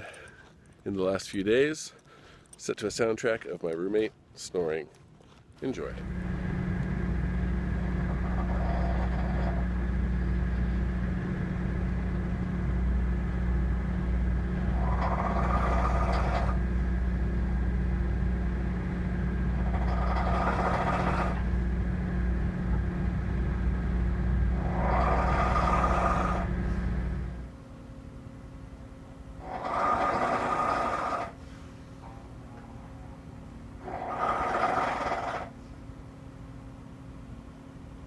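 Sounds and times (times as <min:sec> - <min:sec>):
steady low hum: 0:00.0 - 0:38.0
man snoring: 0:14.7 - 0:16.6, 0:19.8 - 0:21.4, 0:24.5 - 0:26.5, 0:29.4 - 0:31.4, 0:33.8 - 0:35.5.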